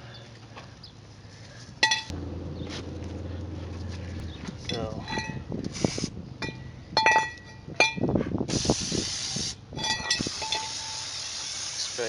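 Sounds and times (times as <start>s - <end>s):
aerosol spray hissing: 5.7s - 6.1s, 8.5s - 9.6s, 10.2s - 12.0s.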